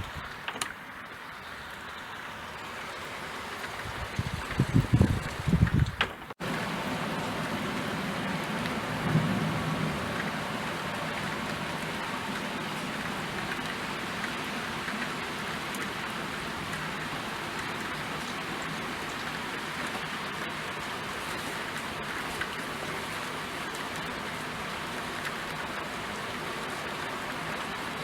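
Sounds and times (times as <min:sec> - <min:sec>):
steady rain: 0:00.0 - 0:28.0
loud low rumbles: 0:06.4 - 0:13.3.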